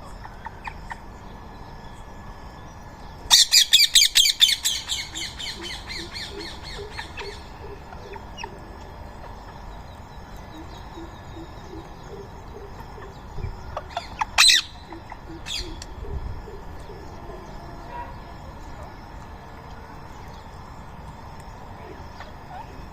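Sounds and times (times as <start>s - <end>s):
shrill repeated bird calls: 3.2s - 18.6s
harsh bird squawks: 3.3s - 8.6s, 13.7s - 16.6s.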